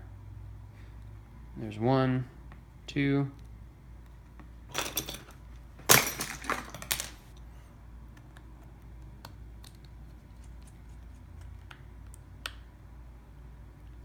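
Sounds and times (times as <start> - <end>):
small tools clicking and clattering: 4.7 - 7.3.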